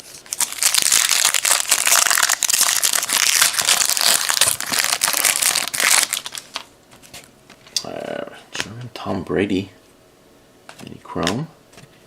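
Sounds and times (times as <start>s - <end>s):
foil wrapper crinkling: 0.0s - 7.2s.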